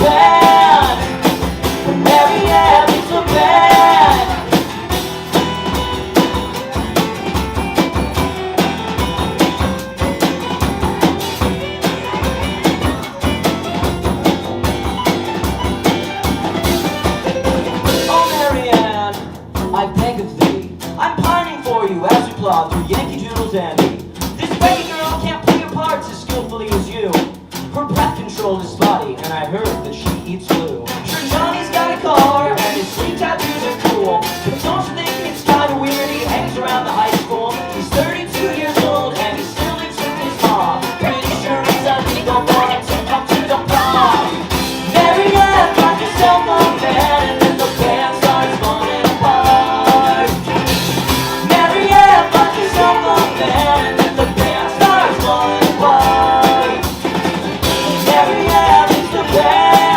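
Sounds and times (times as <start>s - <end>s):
guitars bending in pitch: 0.0s - 18.7s, 34.7s - 59.9s
bass guitar: 0.0s - 59.9s
drum kit beat: 0.0s - 59.9s.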